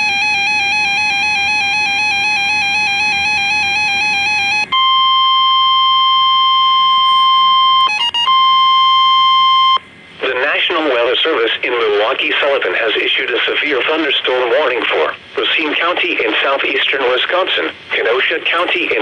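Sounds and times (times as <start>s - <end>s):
steady warning alarm tone: 0.0s - 9.8s.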